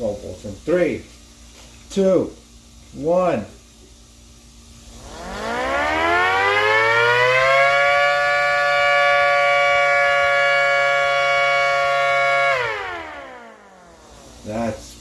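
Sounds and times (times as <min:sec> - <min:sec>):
siren wailing: 0:05.0 - 0:14.8.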